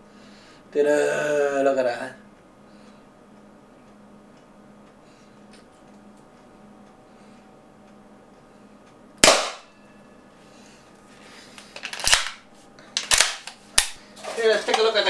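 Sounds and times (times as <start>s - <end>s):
airsoft shotgun shot: 9.2s - 9.7s.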